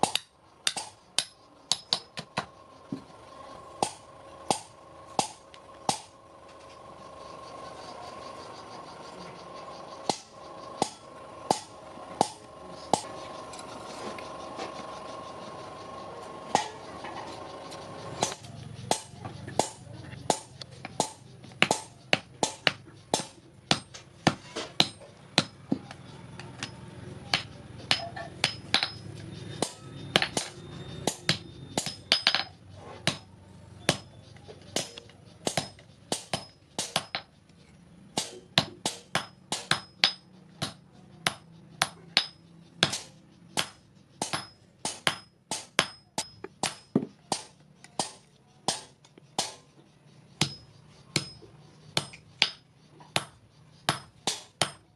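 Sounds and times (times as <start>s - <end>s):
hammer striking steel on anvil: 0.0s - 2.5s, 3.8s - 6.2s, 10.0s - 13.7s, 16.5s - 17.1s, 17.7s - 33.3s, 33.9s - 34.1s, 34.7s - 37.3s, 38.2s - 49.7s, 50.4s - 54.9s.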